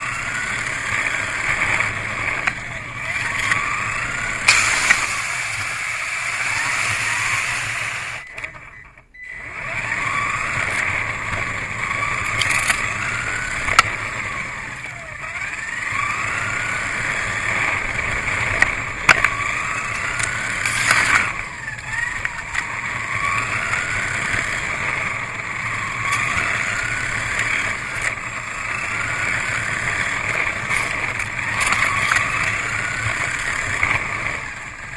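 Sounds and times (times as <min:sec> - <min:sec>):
toy car motor whining: 0:00.0 - 0:34.9.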